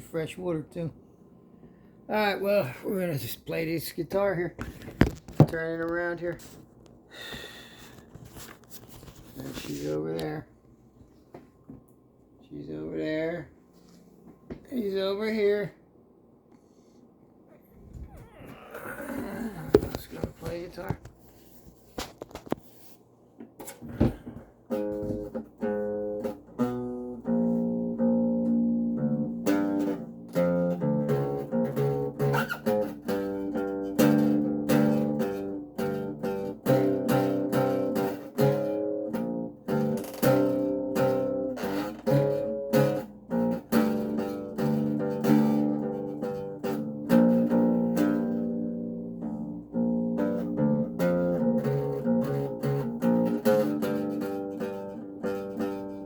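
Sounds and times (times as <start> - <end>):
acoustic bass guitar plucked notes: 24.7 - 56.0.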